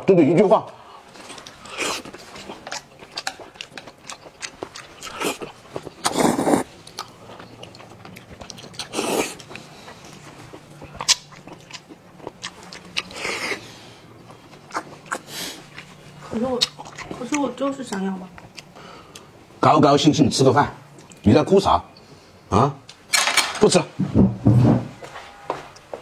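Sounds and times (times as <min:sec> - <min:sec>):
chewing and crunching food: 0:01.0 - 0:19.3.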